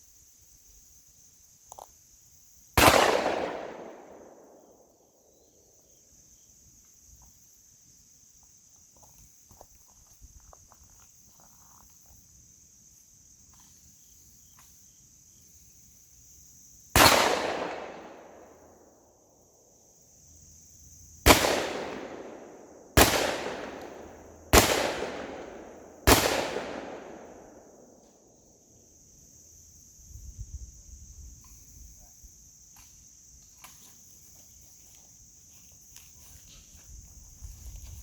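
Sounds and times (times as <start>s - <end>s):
high insect drone: 0.0s - 38.0s
gunshots with rolling echo: 2.8s - 5.0s, 17.0s - 18.8s, 21.2s - 28.3s.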